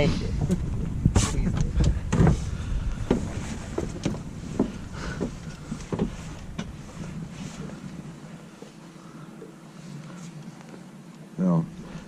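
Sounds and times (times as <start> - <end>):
low rumble: 0.0 - 8.4
sharp knocks and clicks: 3.1 - 6.8.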